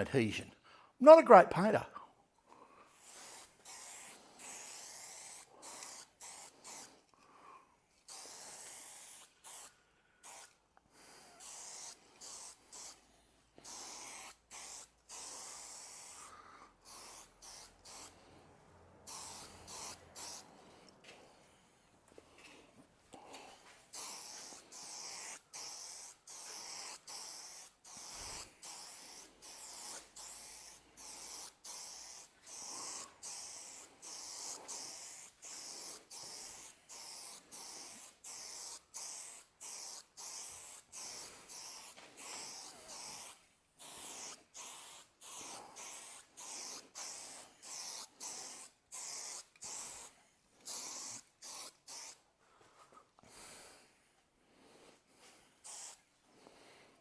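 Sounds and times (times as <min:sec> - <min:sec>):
spray paint can bursts: 0:03.0 - 0:06.9, 0:08.1 - 0:10.6, 0:11.4 - 0:13.0, 0:13.6 - 0:18.1, 0:19.0 - 0:20.5, 0:23.9 - 0:52.2, 0:55.6 - 0:56.0.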